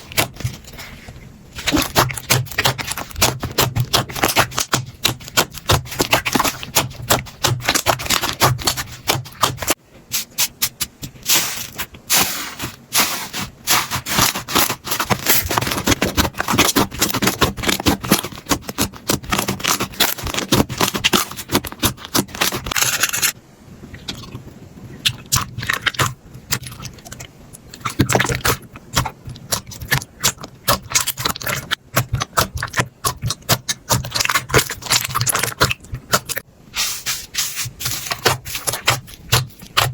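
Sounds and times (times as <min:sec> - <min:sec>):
slime crackling and popping: 0:01.6 - 0:09.8, 0:13.7 - 0:22.8, 0:25.1 - 0:36.4, 0:37.3 - 0:39.9.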